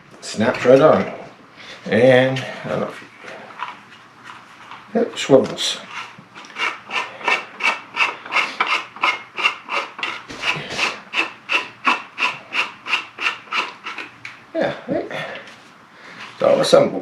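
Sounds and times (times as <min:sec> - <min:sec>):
plastic parts rasping: 0:05.9 - 0:14.2.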